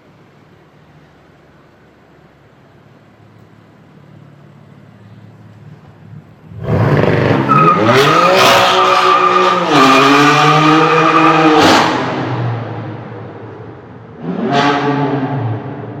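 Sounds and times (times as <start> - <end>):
car engine accelerating hard: 6.5 - 13.4.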